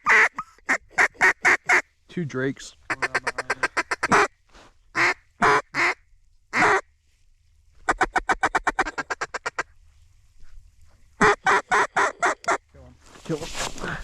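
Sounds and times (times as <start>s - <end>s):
duck call quacking: 0.0s - 1.9s, 2.9s - 6.9s, 7.9s - 9.7s, 11.2s - 12.6s.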